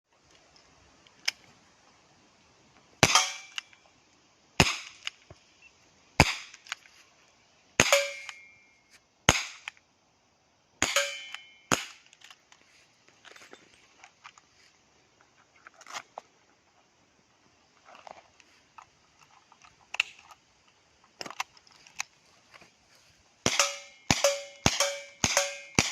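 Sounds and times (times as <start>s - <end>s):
airsoft revolver shots: 3.0s - 3.6s, 4.6s - 5.1s, 6.2s - 6.6s, 7.8s - 8.5s, 9.3s - 9.7s, 10.8s - 12.0s, 23.4s - 25.9s.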